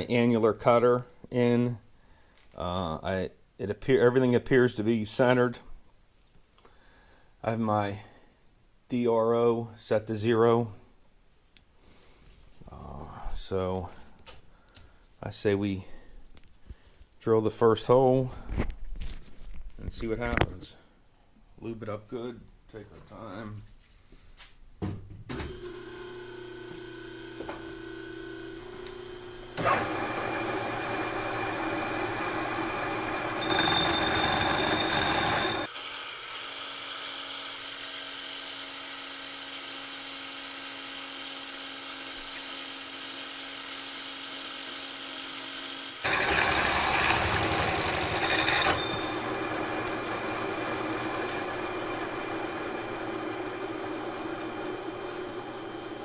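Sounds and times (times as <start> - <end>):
milling cutter cutting metal: 25.5 - 56.0.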